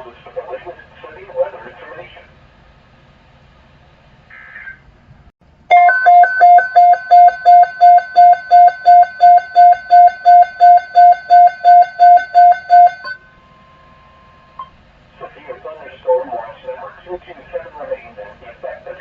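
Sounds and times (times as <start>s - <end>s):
pulsing electronic alert beep: 5.7s - 13.2s
steady high alert tones: 5.7s - 13.2s.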